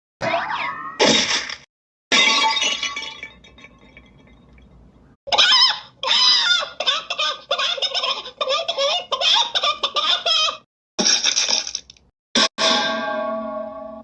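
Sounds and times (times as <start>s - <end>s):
glass breaking crash: 1.0s - 4.1s.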